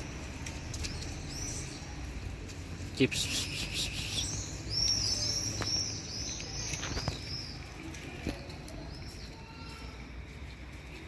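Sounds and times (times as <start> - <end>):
bird chirping: 3.0 - 8.0.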